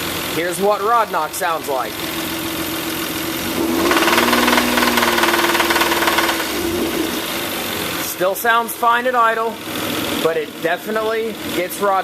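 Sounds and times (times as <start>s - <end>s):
car engine idling and revving: 0.0s - 11.7s
engine knocking: 2.0s - 8.1s.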